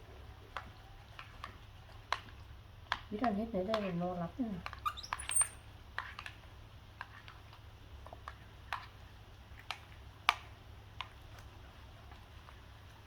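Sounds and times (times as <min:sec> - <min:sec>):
light clicks and taps: 0:00.5 - 0:06.4.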